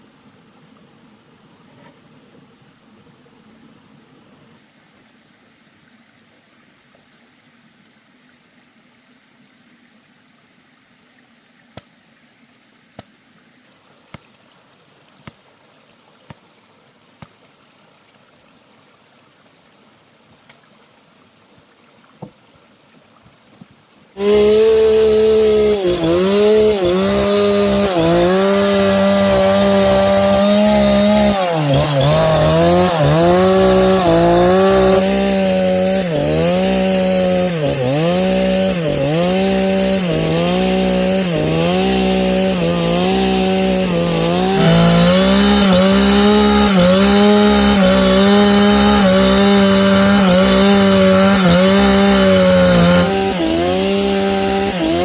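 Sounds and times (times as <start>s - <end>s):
chainsaw cutting log: 24.2s - 55.0s.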